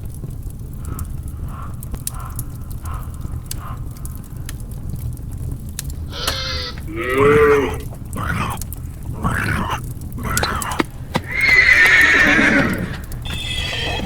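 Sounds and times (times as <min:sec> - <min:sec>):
fire crackling: 0:00.0 - 0:14.0
loud animal cry: 0:06.1 - 0:14.0
soft squeaks: 0:10.4 - 0:14.0.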